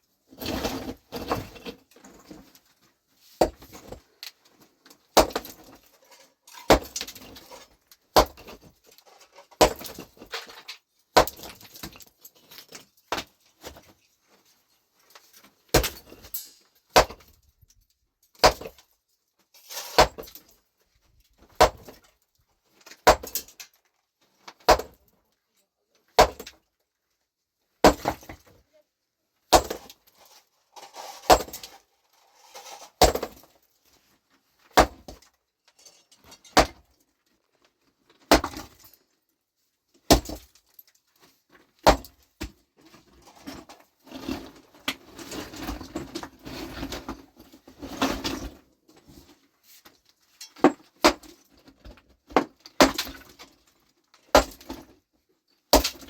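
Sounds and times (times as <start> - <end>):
hammer breaking rock: 5.2 - 5.7, 6.7 - 7.3, 8.2 - 8.6, 9.6 - 10.0, 11.2 - 12.0, 15.7 - 16.2, 18.4 - 18.8, 21.6 - 22.0, 23.0 - 23.4, 24.7 - 25.0, 26.2 - 26.6, 27.8 - 28.4, 29.5 - 29.9, 33.0 - 33.4, 34.8 - 35.2, 36.6 - 36.8, 38.3 - 38.8, 40.1 - 40.5, 41.8 - 42.2, 52.8 - 53.3, 54.4 - 54.8, 55.7 - 56.0
stones clattering and scraping: 29.6 - 33.6, 41.9 - 53.4.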